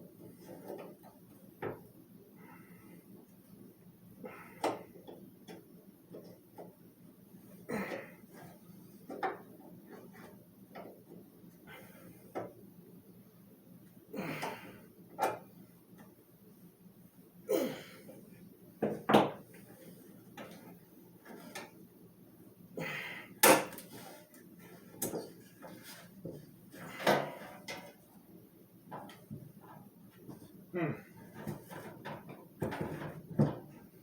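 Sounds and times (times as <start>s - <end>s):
fan parts knocking and scraping: 0.1s - 1.9s, 8.3s - 11.3s, 18.8s - 21.8s, 23.4s - 28.2s, 28.9s - 30.6s, 31.2s - 34.0s.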